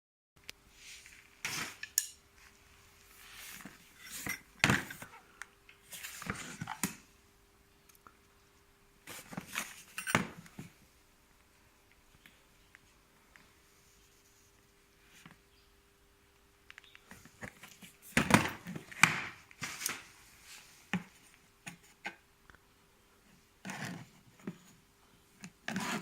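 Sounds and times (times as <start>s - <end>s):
plastic and cardboard packaging handled: 25.5s - 26.0s.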